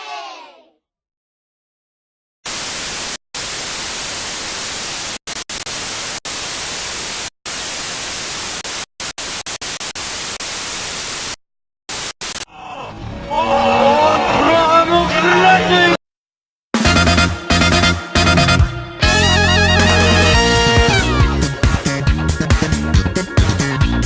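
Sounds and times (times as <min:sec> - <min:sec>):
harsh static hiss: 0:02.4 - 0:12.5.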